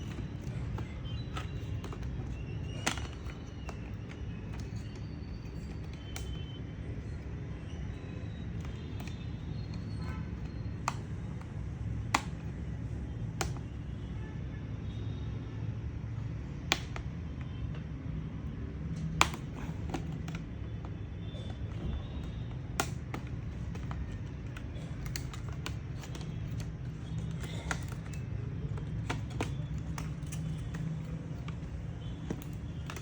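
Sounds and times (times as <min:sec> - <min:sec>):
screwdriver clicks on plastic case: 0:00.0 - 0:06.4, 0:10.4 - 0:12.6, 0:16.7 - 0:17.1, 0:19.0 - 0:33.0.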